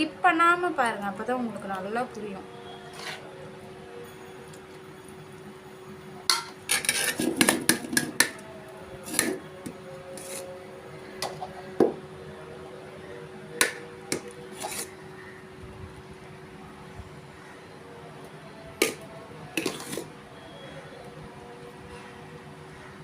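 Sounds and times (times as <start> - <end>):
metal utensils clinking on a pot: 6.3 - 8.4, 9.0 - 10.4, 19.6 - 20.1.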